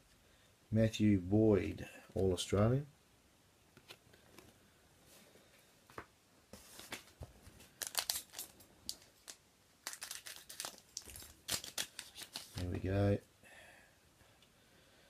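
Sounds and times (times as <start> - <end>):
cards being handled: 5.9 - 12.8
wrapper crinkling: 6.7 - 12.7.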